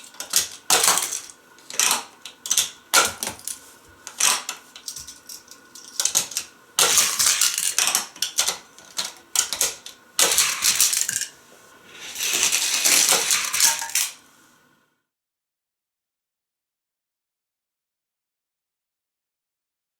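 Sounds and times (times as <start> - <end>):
toy car clattering on plastic track: 0.0 - 14.2.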